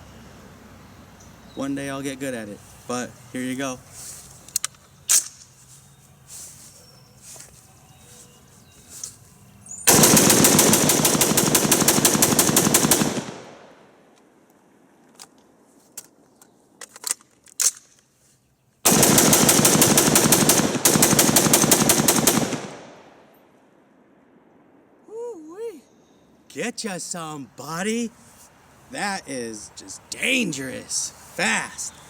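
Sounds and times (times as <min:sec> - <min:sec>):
rifle fired rapidly: 0:09.9 - 0:13.7, 0:18.9 - 0:23.1.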